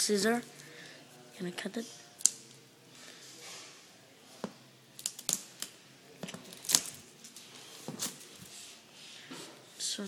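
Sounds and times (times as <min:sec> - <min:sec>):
scissors snipping packaging: 0:06.5 - 0:07.0.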